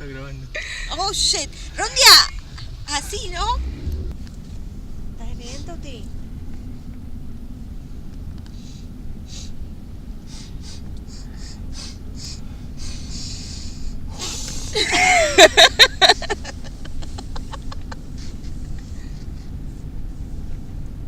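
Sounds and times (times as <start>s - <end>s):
wheezy breaths: 8.5s - 14.8s
person laughing hard: 14.7s - 18.8s.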